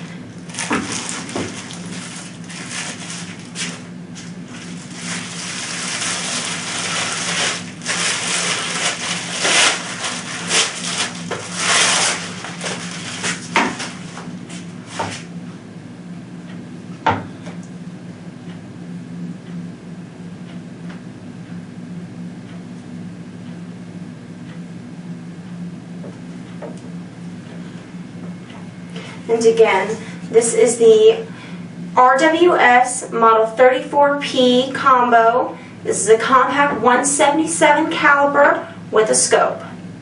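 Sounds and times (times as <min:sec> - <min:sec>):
packaging rustling and crinkling: 0:00.4 - 0:14.3.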